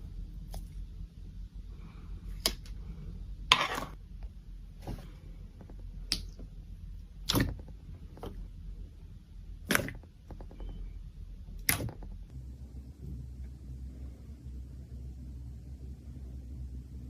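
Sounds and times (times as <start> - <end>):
faint low hum: 0.0 - 17.0
slime popping: 7.2 - 7.7, 11.6 - 12.1.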